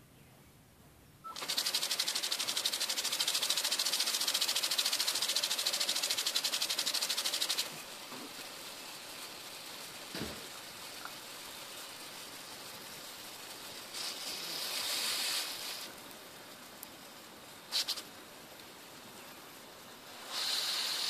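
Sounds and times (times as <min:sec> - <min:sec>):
hose sprinkler spraying water: 0:01.2 - 0:21.0.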